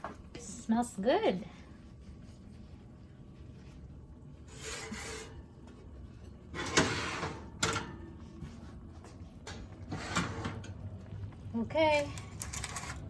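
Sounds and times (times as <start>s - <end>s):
low steady hum: 0.0s - 13.0s
dish scraping in oven: 4.4s - 8.2s, 9.4s - 10.8s.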